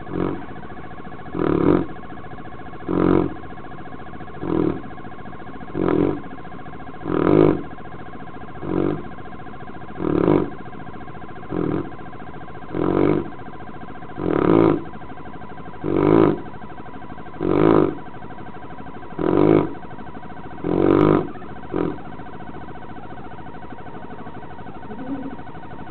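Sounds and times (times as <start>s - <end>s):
dog snoring: 0.0s - 3.6s, 4.2s - 15.0s, 15.7s - 16.6s, 17.3s - 25.9s.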